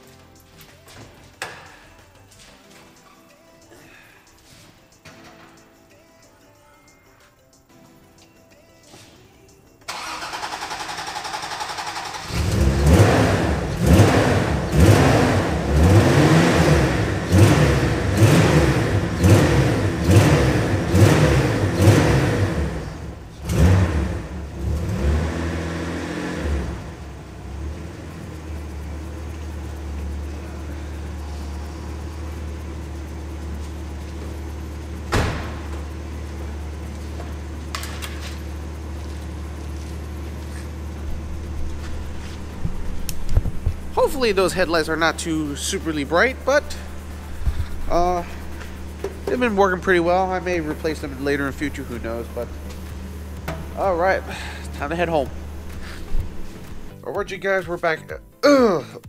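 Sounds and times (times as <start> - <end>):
car engine revving and idling: 9.9 - 57.0.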